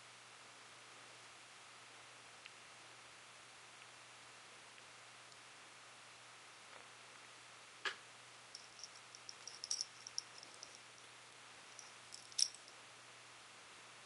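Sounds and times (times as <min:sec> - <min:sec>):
steady low hum: 0:08.2 - 0:13.8.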